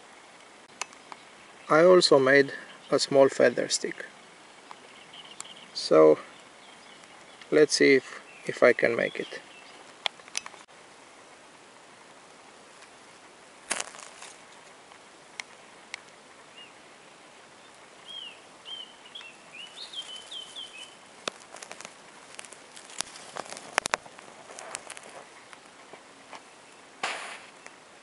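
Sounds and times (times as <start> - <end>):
small bird chirping: 4.6 - 7.6, 17.6 - 25.8.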